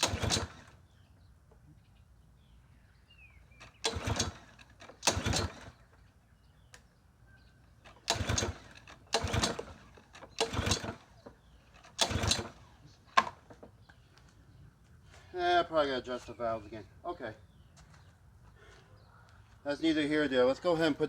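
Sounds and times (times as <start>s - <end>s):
lawn mower pull-start attempts: 0.0s - 1.6s, 3.4s - 6.9s, 7.6s - 14.0s.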